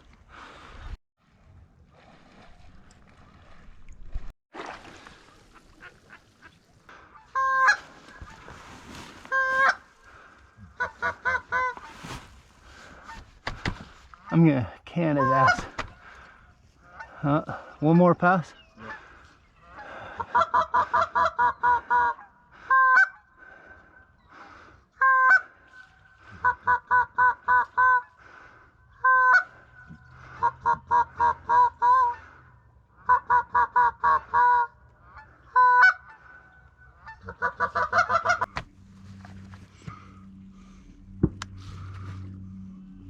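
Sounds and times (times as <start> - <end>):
goose-like honking calls: 5.7 - 8.4, 9.3 - 9.8, 10.6 - 11.9, 15.1 - 15.8, 25.0 - 25.5, 29.0 - 32.3, 33.0 - 36.3, 37.0 - 38.6
low steady hum: 37.8 - 43.0.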